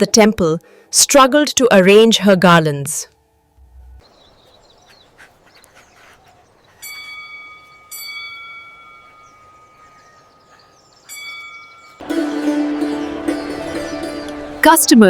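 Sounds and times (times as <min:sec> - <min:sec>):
small bell ringing: 0:06.8 - 0:09.8.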